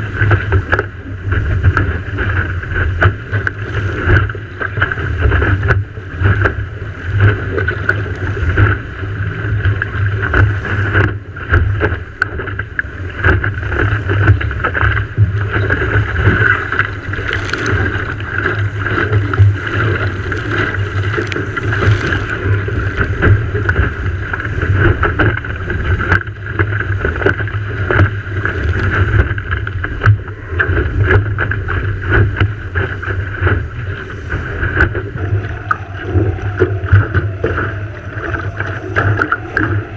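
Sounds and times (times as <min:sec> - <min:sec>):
water slapping against hull: 0:00.0 - 0:39.9
wind buffeting microphone: 0:00.0 - 0:39.9
small knocks and splashes: 0:09.7 - 0:24.0.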